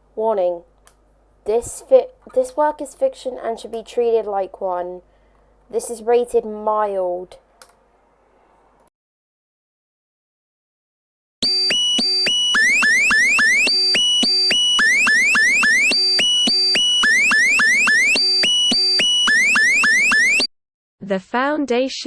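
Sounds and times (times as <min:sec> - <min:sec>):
buzzy electronic alert beeps: 0:11.4 - 0:20.5.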